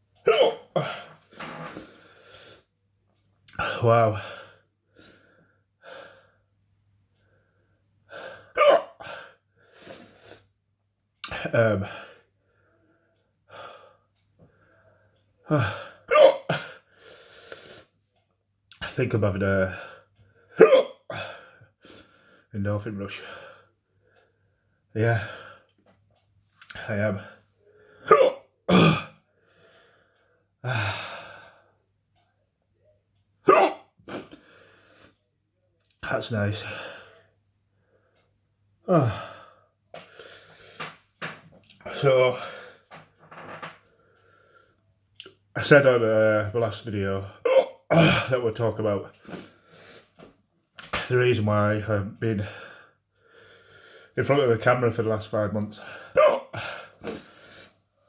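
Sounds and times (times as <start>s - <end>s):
man hiccupping: 0.2s - 1.8s, 8.6s - 9.1s, 15.5s - 16.8s, 20.6s - 21.2s, 28.1s - 29.2s, 33.4s - 34.4s, 47.4s - 48.3s, 56.2s - 57.2s
faint breaths: 11.9s - 16.0s, 43.8s - 45.0s, 52.4s - 54.2s
sharp throat sounds: 33.5s - 34.4s, 56.2s - 57.3s
man sighing heavily: 38.9s - 40.1s.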